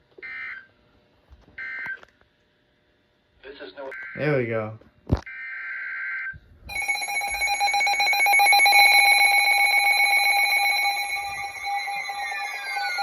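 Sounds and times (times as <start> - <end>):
harsh alarm tone: 5.3 - 13.0
falling pitch tone: 6.7 - 13.0.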